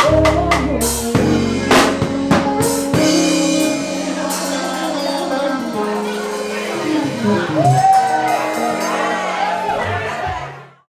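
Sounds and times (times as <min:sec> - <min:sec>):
band chord ringing out: 0:00.0 - 0:10.5.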